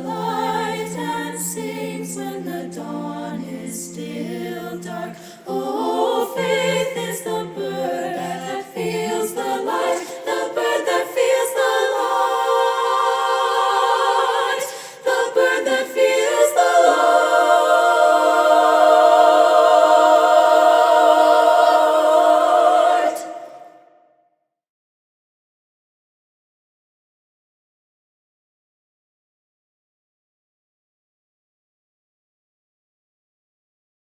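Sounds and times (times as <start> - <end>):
a cappella choir singing: 0.0 - 24.1.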